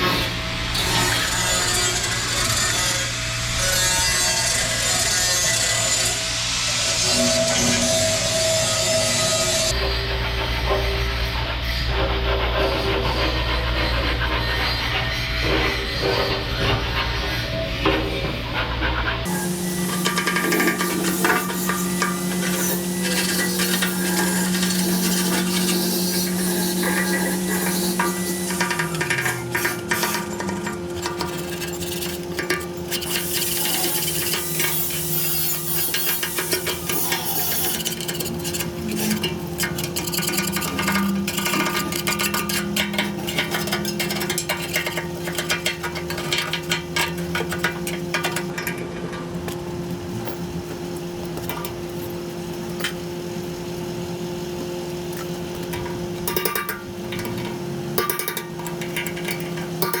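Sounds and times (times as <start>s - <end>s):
steady hum: 19.3s - 60.0s.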